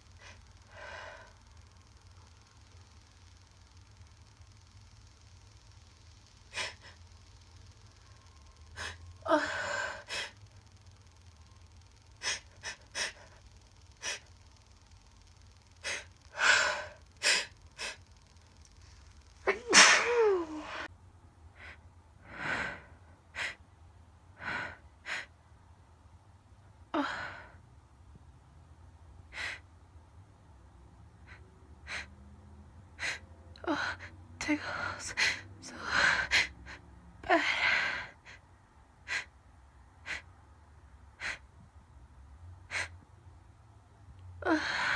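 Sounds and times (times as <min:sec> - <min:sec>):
sharp gasping breaths: 0:00.1 - 0:01.4, 0:06.5 - 0:07.0, 0:08.8 - 0:10.4, 0:12.2 - 0:13.4, 0:14.0 - 0:14.3, 0:15.8 - 0:18.0, 0:31.3 - 0:32.1, 0:33.0 - 0:33.2, 0:39.1 - 0:39.3, 0:40.0 - 0:40.3, 0:41.2 - 0:41.4, 0:42.7 - 0:42.9
woman sneezing: 0:19.5 - 0:20.8.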